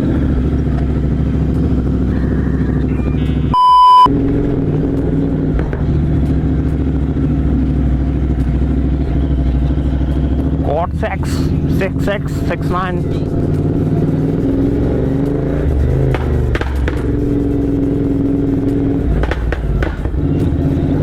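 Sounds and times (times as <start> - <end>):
motorcycle engine running: 0.0 - 21.0
censor beep: 2.9 - 4.1.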